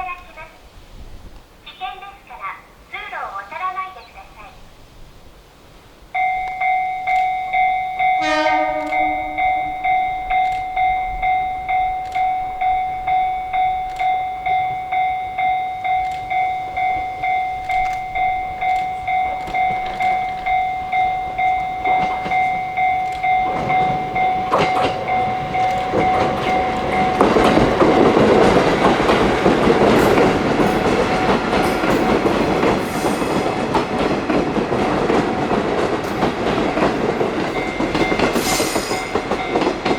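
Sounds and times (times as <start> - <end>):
train rumble: 0.0 - 39.9
level crossing bell ringing: 6.2 - 32.8, 35.3 - 39.9
train wheels clickety-clack: 6.2 - 39.9
train horn blast: 8.2 - 9.8.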